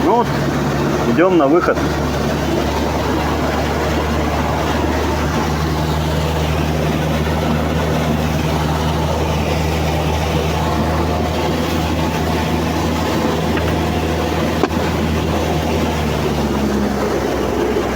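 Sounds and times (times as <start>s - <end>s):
rush of water: 0.0s - 17.9s
vehicle engine running under load: 0.0s - 17.9s.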